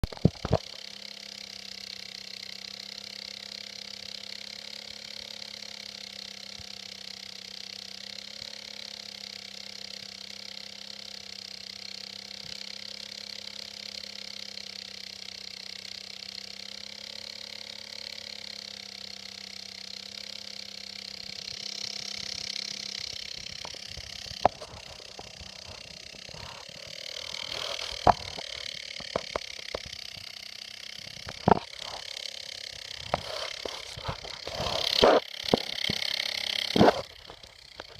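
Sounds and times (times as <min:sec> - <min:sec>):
computer fan humming: 0:18.8 - 0:37.9.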